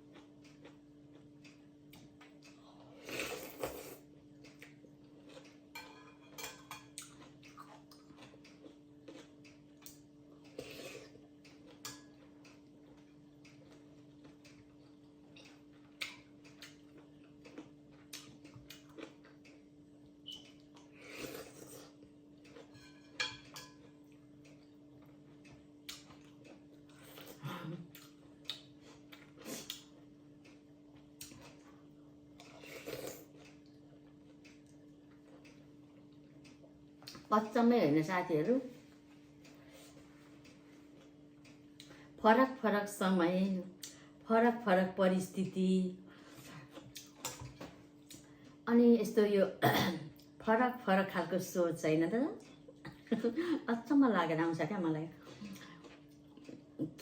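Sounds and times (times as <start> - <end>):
chewing and mouth sounds: 0.0 - 37.3, 46.3 - 48.6, 55.2 - 57.0
steady low hum: 0.0 - 57.0
utensils clicking against a dish: 5.4 - 7.6, 11.4 - 12.6, 22.6 - 23.8.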